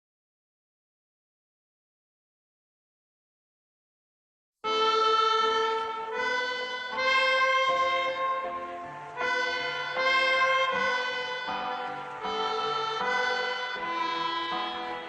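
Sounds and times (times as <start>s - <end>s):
instrumental held chords: 4.6s - 15.0s.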